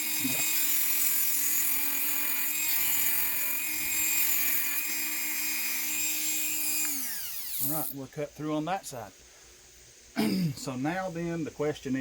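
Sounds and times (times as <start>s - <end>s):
high-speed power tool cutting: 0.0s - 8.0s.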